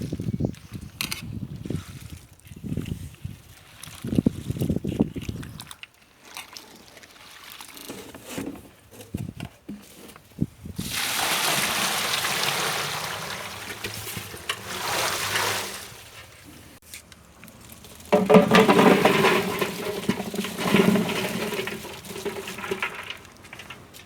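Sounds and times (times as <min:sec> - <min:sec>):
water pouring: 0:10.8 - 0:16.4, 0:17.2 - 0:24.0.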